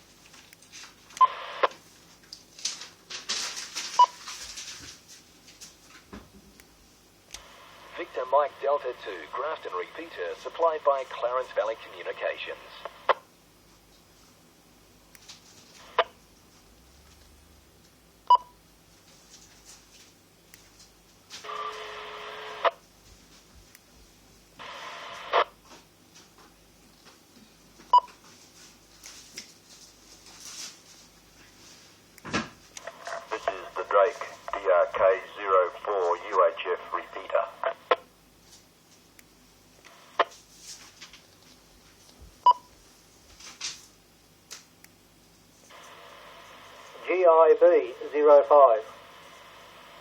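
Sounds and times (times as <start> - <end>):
faint radio hiss: 0.0 - 50.0
radio squelch crack: 1.1 - 1.8, 7.3 - 13.3, 15.2 - 16.2, 24.6 - 25.6, 32.8 - 38.1, 39.8 - 40.4, 45.7 - 50.0
radio repeater tones: 7.4 - 13.2, 32.8 - 38.1, 45.7 - 50.0.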